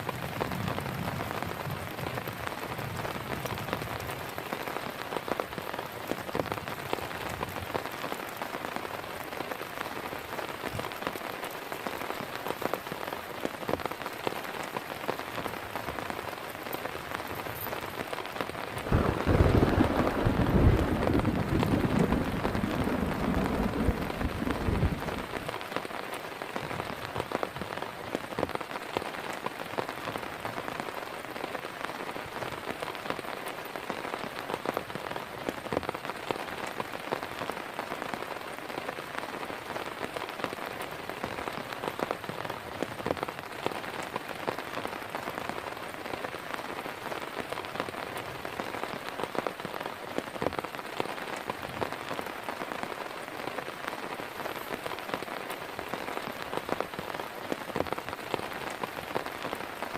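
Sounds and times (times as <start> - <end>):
heavy rain pattering: 0.0 - 59.9
low rumble of thunder: 18.9 - 25.5.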